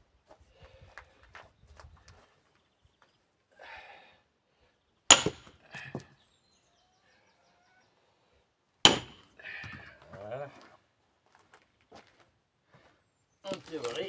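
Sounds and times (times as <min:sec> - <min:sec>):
tool striking firewood: 0:05.1 - 0:06.1, 0:08.9 - 0:09.8.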